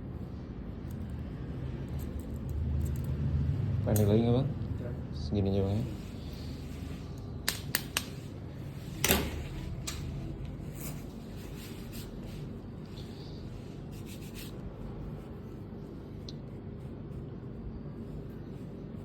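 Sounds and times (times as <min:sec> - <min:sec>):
comb rubbing through hair: 0:13.7 - 0:15.8.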